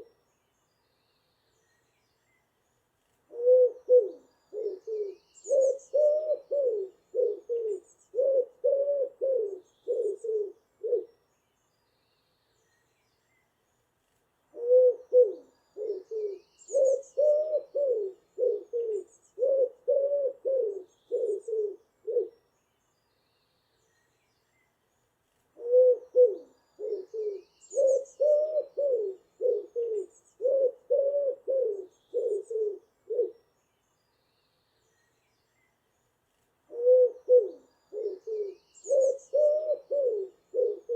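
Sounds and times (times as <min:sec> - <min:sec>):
small birds chirping: 0:00.0 - 0:40.9
pigeon cooing: 0:03.3 - 0:11.1, 0:14.5 - 0:22.3, 0:25.6 - 0:33.4, 0:36.7 - 0:40.9.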